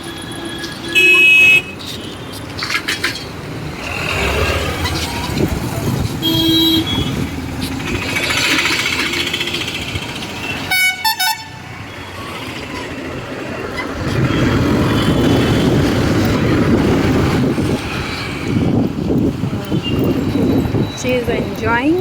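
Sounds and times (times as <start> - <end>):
vehicle horns honking: 0.0 - 2.3, 6.0 - 7.4, 10.4 - 12.0
steady traffic noise: 0.0 - 22.0.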